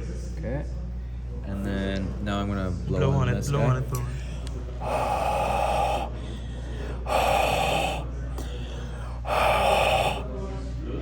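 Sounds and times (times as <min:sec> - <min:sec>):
steady low hum: 0:00.0 - 0:11.0
person blowing breaths: 0:04.8 - 0:10.3.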